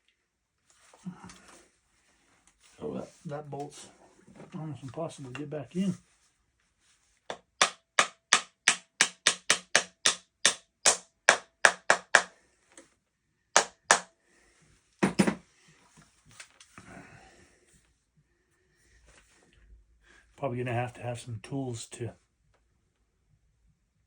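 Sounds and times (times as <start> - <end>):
sharp knocks on shotgun parts: 7.3 - 12.3, 15.0 - 15.4.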